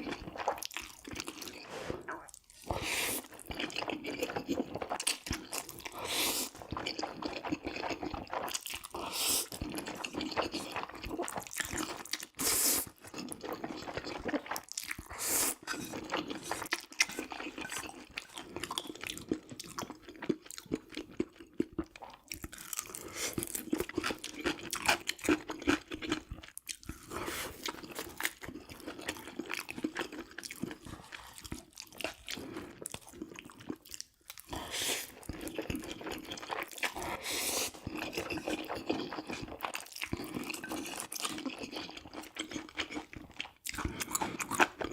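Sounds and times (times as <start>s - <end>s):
crunchy chewing: 22.2s - 44.9s.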